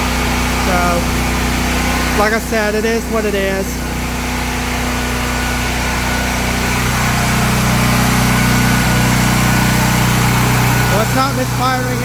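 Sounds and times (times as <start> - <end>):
generator engine running: 0.0 - 12.0.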